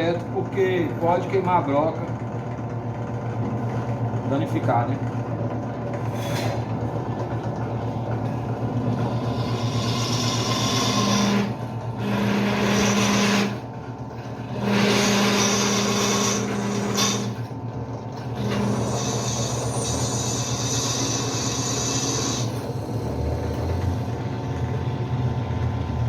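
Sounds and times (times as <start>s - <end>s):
drill press motor running: 0.0s - 26.0s
drill bit cutting steel: 8.2s - 13.7s, 14.4s - 17.5s, 18.2s - 24.2s.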